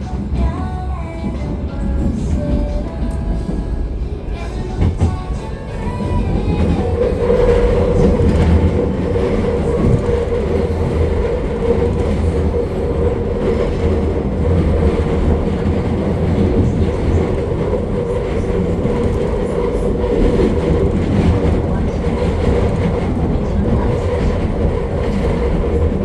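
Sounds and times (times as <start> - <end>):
train wheels rumbling on rail: 0.0 - 26.0.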